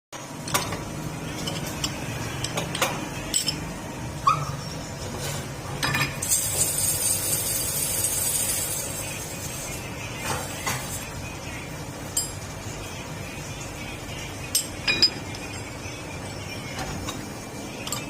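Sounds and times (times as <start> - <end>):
metal tools clinking: 1.3 - 3.7.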